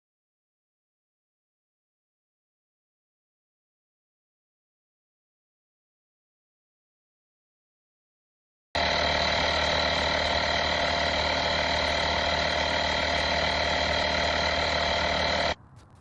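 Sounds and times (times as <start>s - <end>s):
tire inflator compressor running: 8.8s - 15.6s.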